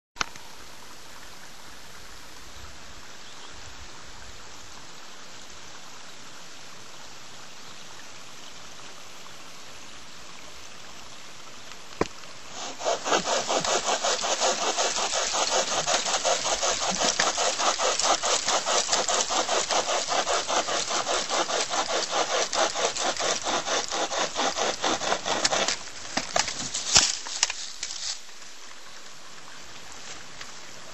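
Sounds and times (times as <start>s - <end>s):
faint steady hiss: 0.2s - 30.9s
hand chain saw cutting branch: 12.0s - 28.2s.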